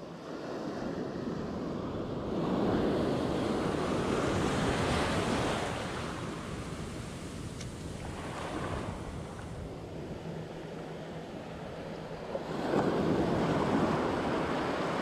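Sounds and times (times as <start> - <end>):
sea waves washing ashore: 0.0 - 15.0
wind buffeting microphone: 0.4 - 15.0.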